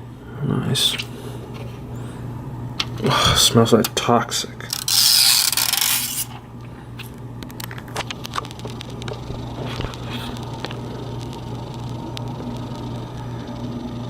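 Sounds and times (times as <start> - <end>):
steady low hum: 0.0 - 14.0
plastic strip peeled off: 4.7 - 6.4
light clicks and crackles: 7.0 - 12.9.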